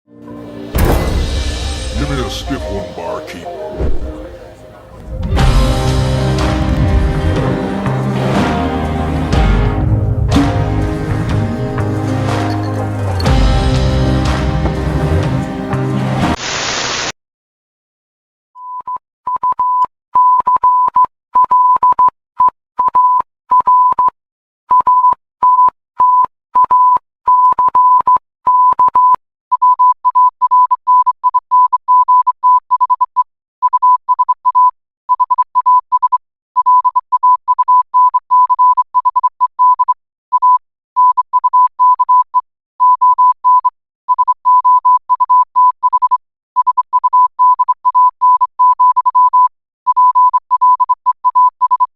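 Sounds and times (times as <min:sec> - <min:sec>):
morse code beeps: 0:18.6 - 0:24.1, 0:24.7 - 0:42.2, 0:42.8 - 0:51.9.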